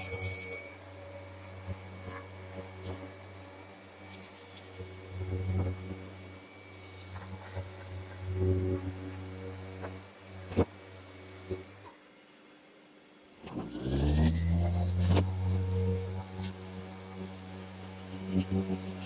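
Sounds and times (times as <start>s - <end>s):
power sander: 13.5s - 19.0s.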